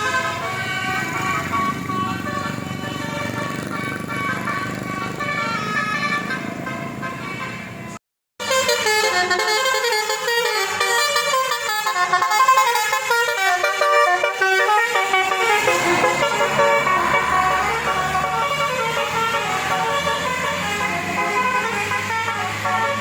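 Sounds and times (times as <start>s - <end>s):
musical air horn playing a tune: 0.0s - 7.7s, 8.4s - 23.0s.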